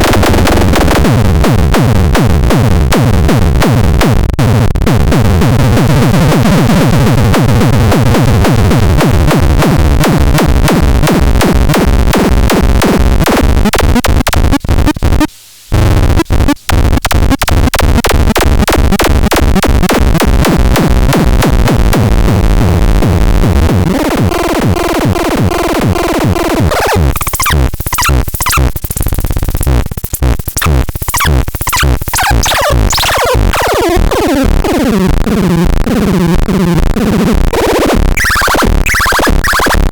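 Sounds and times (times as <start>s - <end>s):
harsh pulsing electronic noise: 8.8s - 39.9s.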